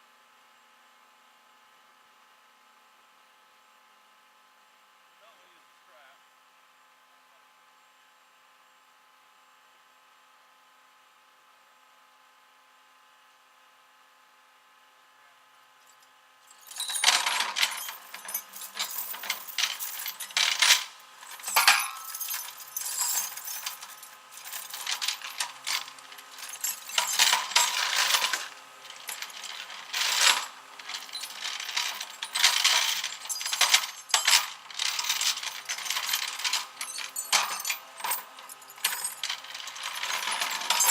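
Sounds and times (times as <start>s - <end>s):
metal tools rattling: 16.6s - 40.9s.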